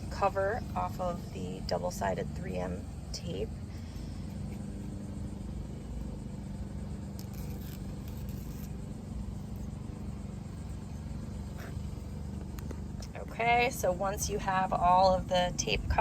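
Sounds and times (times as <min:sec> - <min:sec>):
low engine hum: 0:00.0 - 0:16.0
tape backing film peeling: 0:06.8 - 0:10.9.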